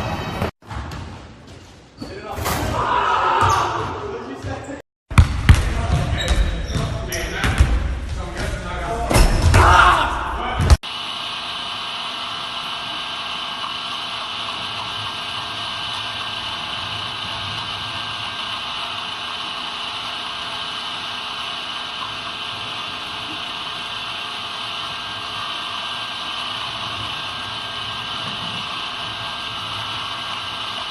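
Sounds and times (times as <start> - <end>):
motor-driven fan whirring: 10.9 - 30.9.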